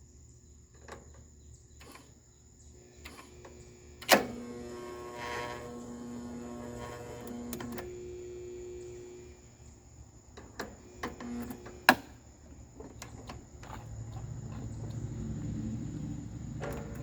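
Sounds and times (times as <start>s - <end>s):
starter motor whirring: 1.8s - 2.2s, 2.8s - 9.5s, 10.6s - 17.0s
starter motor click: 3.0s - 8.0s, 16.5s - 17.0s.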